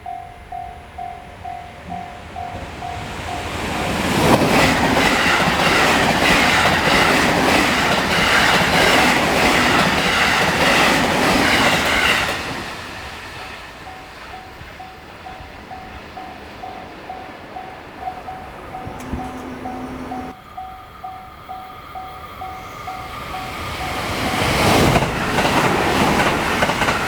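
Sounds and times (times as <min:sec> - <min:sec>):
level-crossing bell dinging: 0:00.0 - 0:04.4, 0:13.8 - 0:24.3
train wheels clacking over rail joints: 0:02.5 - 0:14.3, 0:23.6 - 0:27.0.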